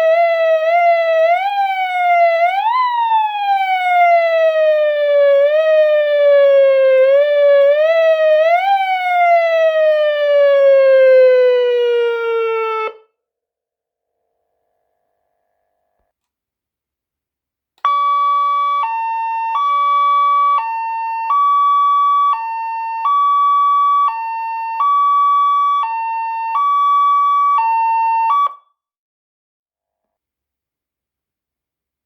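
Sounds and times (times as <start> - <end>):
two-tone electronic car siren: 0.0 - 13.2, 17.8 - 28.8.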